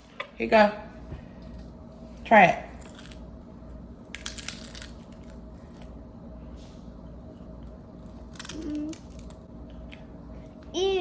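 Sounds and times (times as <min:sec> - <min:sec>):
crunching chip being chewed: 0:04.1 - 0:06.0, 0:08.0 - 0:10.0.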